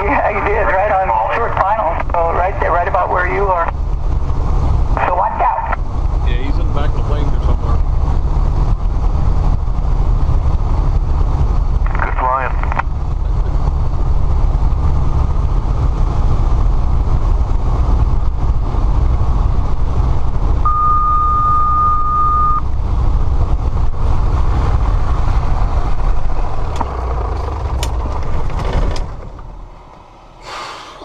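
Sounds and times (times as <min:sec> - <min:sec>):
aircraft engine and airflow rumble: 0:00.0 - 0:31.0
steady beep: 0:20.6 - 0:22.7.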